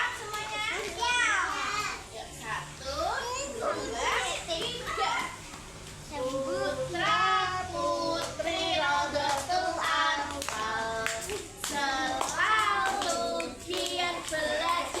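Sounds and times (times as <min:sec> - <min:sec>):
children singing: 0:06.1 - 0:15.0.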